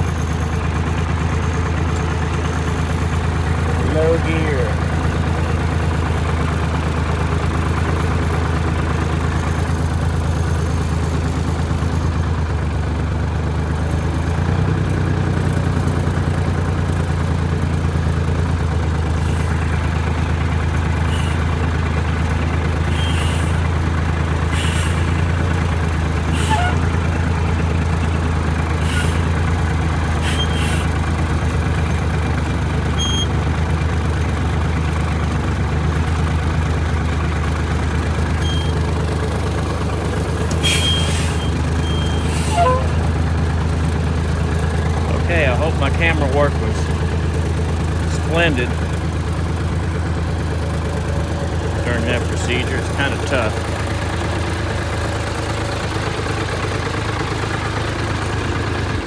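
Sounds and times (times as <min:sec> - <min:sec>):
loader engine running: 0:00.0 - 0:59.0
short high squeaks: 0:22.9 - 0:23.6, 0:26.3 - 0:27.0, 0:30.2 - 0:30.9, 0:33.0 - 0:33.4, 0:38.3 - 0:38.9, 0:40.5 - 0:43.1.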